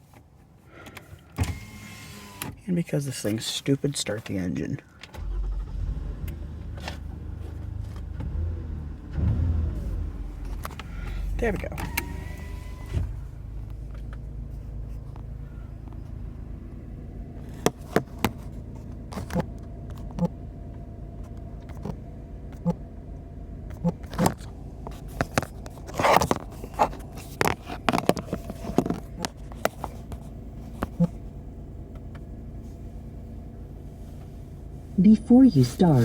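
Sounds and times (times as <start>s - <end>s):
car engine idling: 0.0s - 36.0s
sharp clicks in car cabin: 11.5s - 14.3s, 23.7s - 32.4s
handling scrapes: 24.1s - 31.4s.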